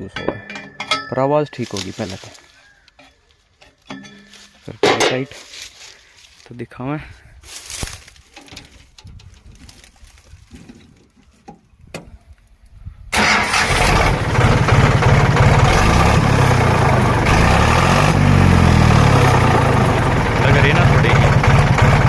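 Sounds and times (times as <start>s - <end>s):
diesel tractor engine running: 13.1s - 22.0s.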